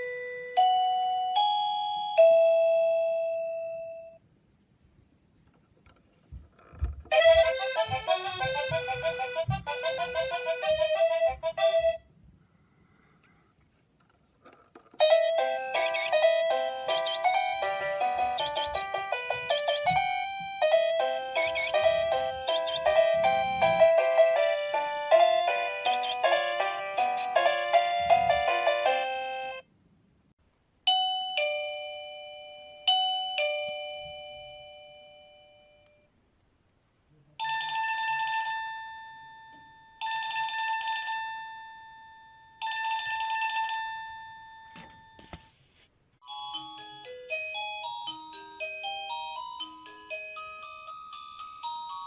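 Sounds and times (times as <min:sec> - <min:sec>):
doorbell chime notes: 0:00.0 - 0:04.2, 0:15.0 - 0:29.6, 0:30.9 - 0:36.1
electronic doorbell tune: 0:00.0 - 0:04.2, 0:07.1 - 0:12.0, 0:15.0 - 0:29.7, 0:30.9 - 0:36.1
short ringtone bursts: 0:15.1 - 0:29.6.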